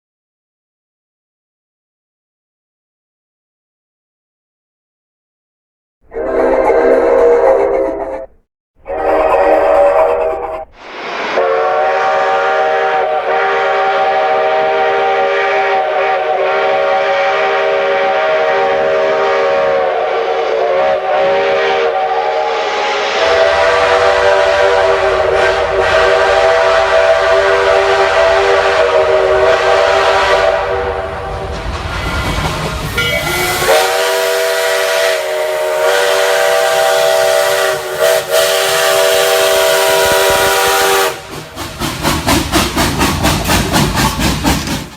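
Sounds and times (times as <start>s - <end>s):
steam hissing: 8.9s - 17.0s, 18.9s - 44.9s
steam locomotive chime whistle: 8.9s - 41.4s.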